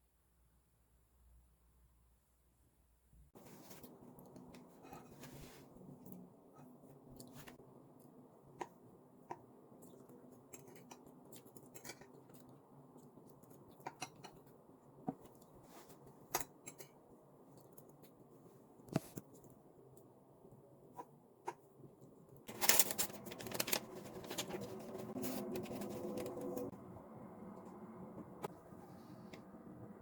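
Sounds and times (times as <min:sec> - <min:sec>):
low room noise: 0:00.0 - 0:30.0.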